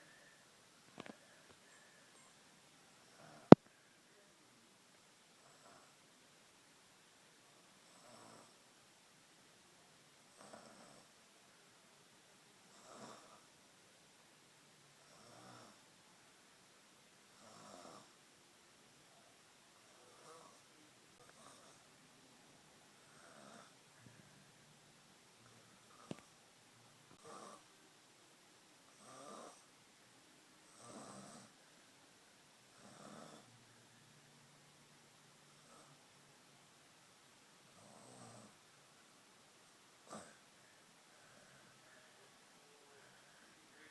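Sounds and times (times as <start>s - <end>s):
faint snoring: 3.0s - 3.6s, 5.4s - 6.0s, 7.6s - 8.7s, 10.3s - 11.2s, 12.6s - 13.6s, 15.0s - 16.0s, 17.3s - 18.2s, 19.2s - 22.0s, 23.0s - 24.6s, 25.4s - 26.4s, 27.1s - 27.8s, 28.9s - 29.7s, 30.6s - 31.8s, 32.7s - 34.3s, 35.4s - 36.2s, 37.7s - 38.7s, 40.0s - 43.9s.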